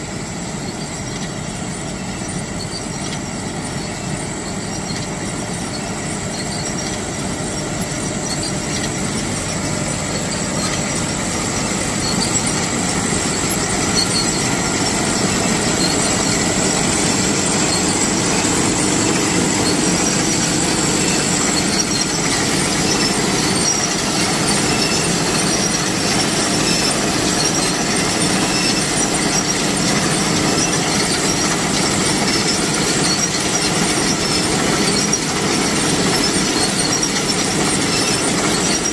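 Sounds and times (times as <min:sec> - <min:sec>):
harvesting machine clatter: 0:00.0 - 0:38.9
thin high whine: 0:00.1 - 0:29.7.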